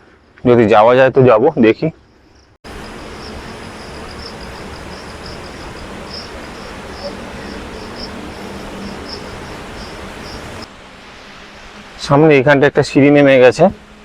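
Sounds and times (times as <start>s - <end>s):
outdoor background hiss: 0.0s - 14.0s
insects chirping: 1.5s - 10.7s.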